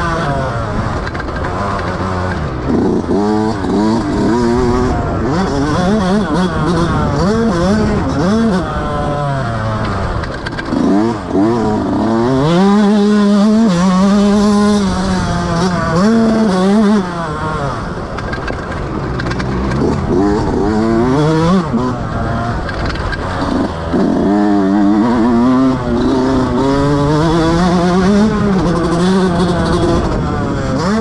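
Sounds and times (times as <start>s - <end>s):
dirt bike engine revving: 0.0s - 31.0s.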